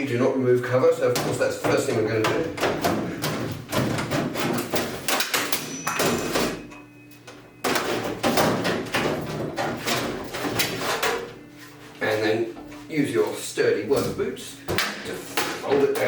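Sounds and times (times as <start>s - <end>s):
sheet metal clanks and scrapes: 1.1s - 6.8s, 7.6s - 11.5s, 13.9s - 16.0s.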